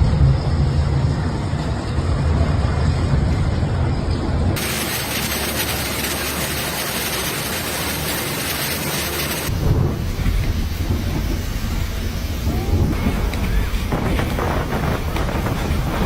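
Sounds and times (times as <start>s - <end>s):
pouring water hiss: 4.6s - 16.0s
wind rumbling on microphone: 9.4s - 16.0s.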